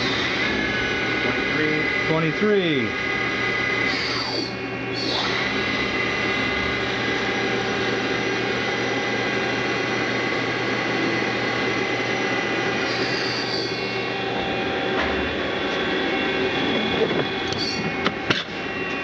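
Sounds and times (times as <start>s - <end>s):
lathe mechanical whine: 0.0s - 19.0s.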